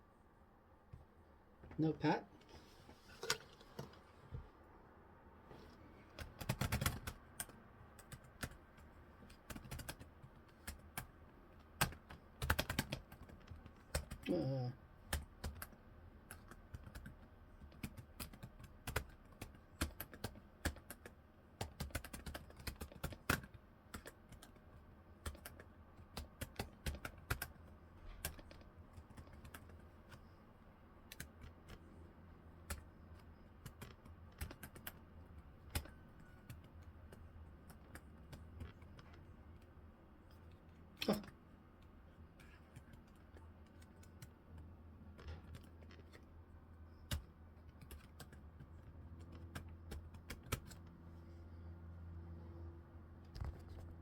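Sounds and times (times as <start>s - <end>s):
laptop keyboard typing: 6.0s - 30.4s, 31.0s - 41.4s, 42.1s - 51.0s.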